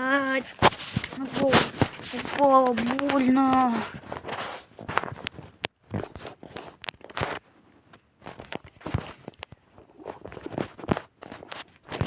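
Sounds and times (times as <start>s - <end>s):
footsteps: 0.0s - 7.4s.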